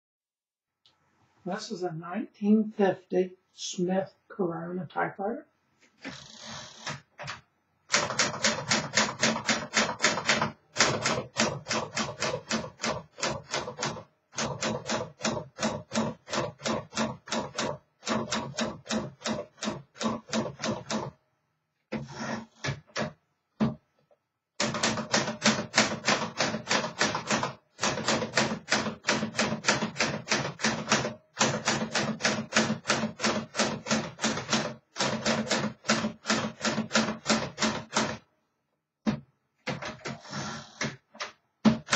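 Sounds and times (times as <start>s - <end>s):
manual typewriter keystrokes: 6.8s - 21.1s, 24.6s - 38.2s.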